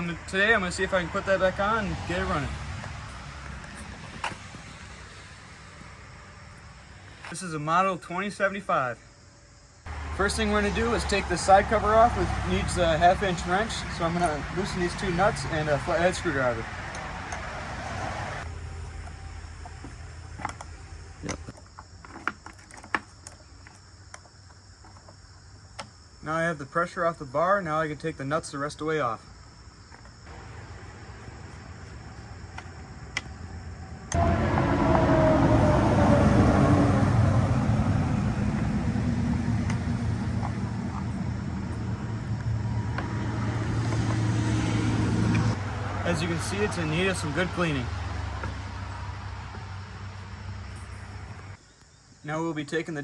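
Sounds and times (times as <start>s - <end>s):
crickets chirring: 0.0s - 53.0s
engine humming: 9.7s - 24.2s, 30.2s - 51.6s.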